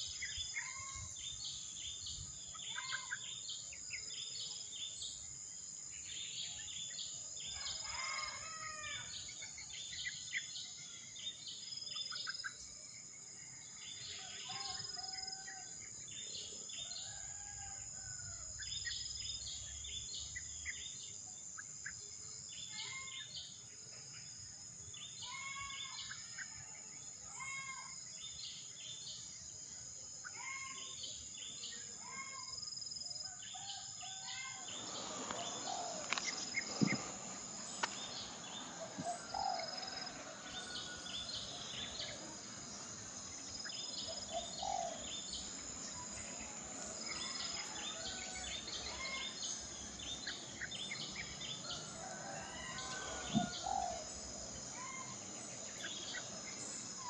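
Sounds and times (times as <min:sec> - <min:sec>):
high-pitched insect drone: 0:30.2 - 0:57.0
birds chirping: 0:33.6 - 0:57.0.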